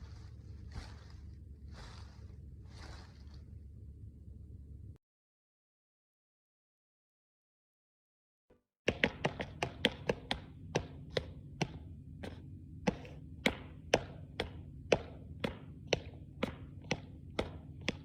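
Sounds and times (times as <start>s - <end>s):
low steady hum: 0.0s - 5.0s, 9.0s - 18.0s.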